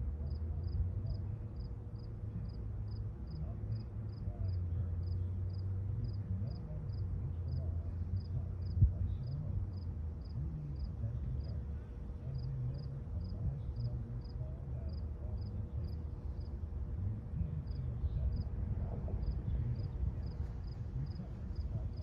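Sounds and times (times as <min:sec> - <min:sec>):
steady low rumble: 0:00.0 - 0:22.0.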